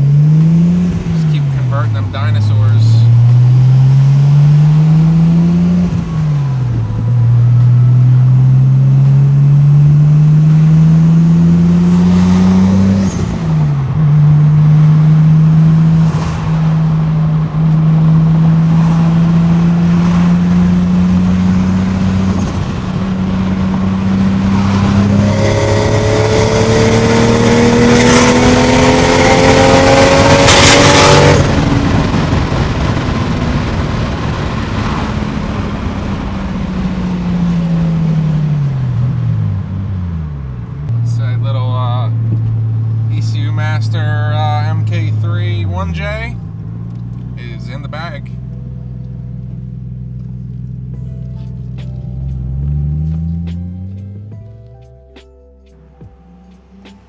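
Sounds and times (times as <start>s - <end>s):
car engine accelerating: 0.0s - 57.0s.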